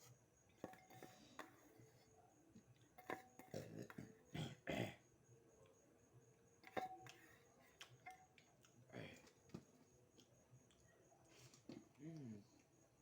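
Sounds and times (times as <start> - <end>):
chewing and smacking: 7.1 - 8.8.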